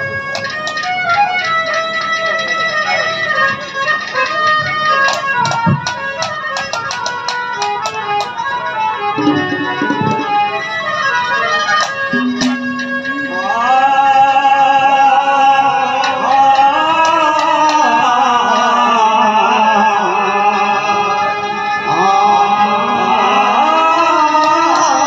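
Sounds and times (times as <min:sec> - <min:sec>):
instrumental accompaniment: 0:00.0 - 0:25.0
sharp percussion strikes: 0:05.1 - 0:08.4, 0:09.2 - 0:14.1
man singing long notes: 0:12.1 - 0:25.0.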